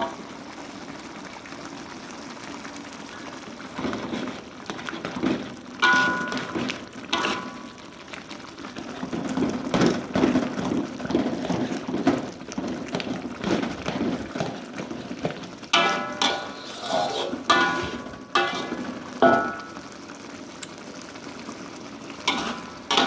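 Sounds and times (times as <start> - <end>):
fish sizzling in pan: 0.0 - 23.0
metal spatula scraping fish in pan: 3.8 - 7.8, 8.8 - 19.8, 22.2 - 23.0
spatula clanking against pan: 4.9 - 7.8, 15.8 - 19.8, 22.3 - 23.0.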